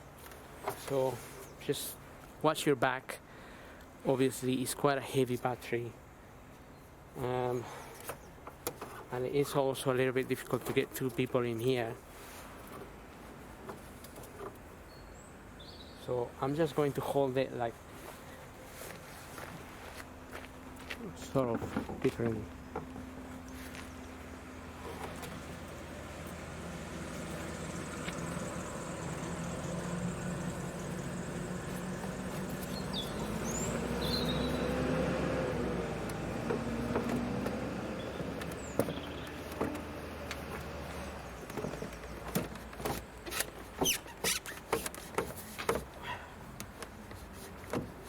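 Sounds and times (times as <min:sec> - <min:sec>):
low engine-like rumble: 0:18.0 - 0:42.7.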